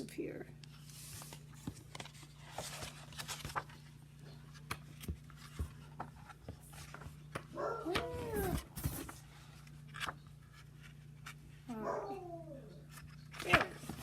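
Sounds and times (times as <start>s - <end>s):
dog whining: 7.5s - 8.7s, 11.7s - 12.9s.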